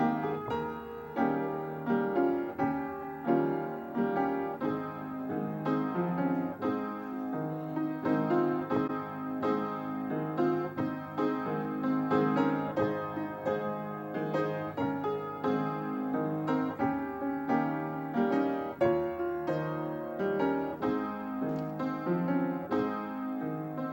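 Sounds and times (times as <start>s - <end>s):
piano playing: 0.0s - 23.9s.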